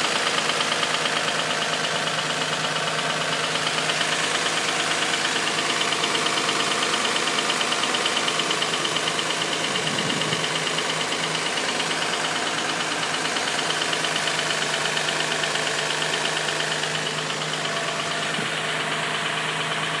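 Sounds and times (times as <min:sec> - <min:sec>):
car engine idling: 0:00.0 - 0:20.0
rapid engine ticking: 0:00.0 - 0:20.0.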